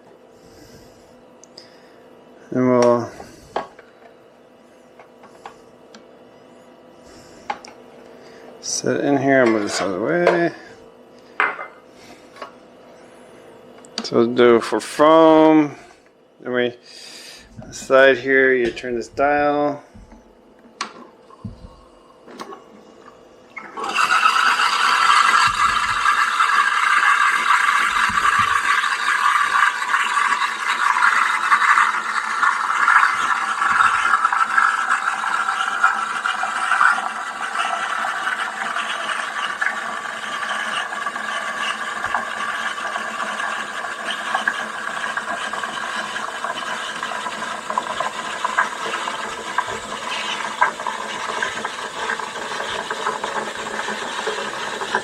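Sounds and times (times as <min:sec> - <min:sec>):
steam wand hissing: 0:23.8 - 0:39.3.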